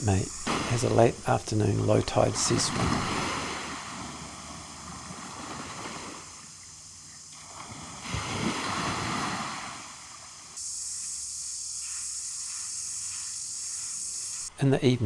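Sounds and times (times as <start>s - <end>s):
steady high hiss: 0.0s - 15.0s
small waves washing in shallows: 0.4s - 10.6s.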